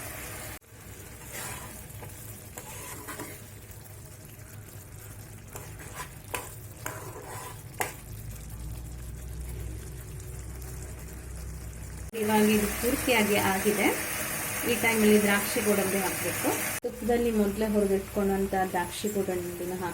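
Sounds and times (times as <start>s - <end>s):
low sizzle: 0.0s - 19.9s
spoon stirring thick mixture: 0.9s - 9.8s.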